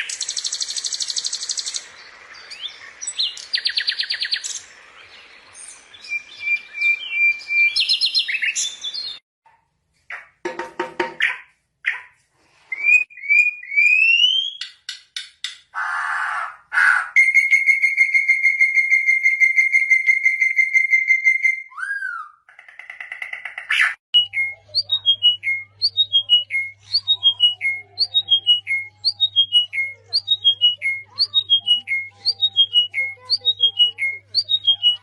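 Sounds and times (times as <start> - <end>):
bird squawking: 15.8 - 17.2
bird trilled whistle: 17.2 - 22.4.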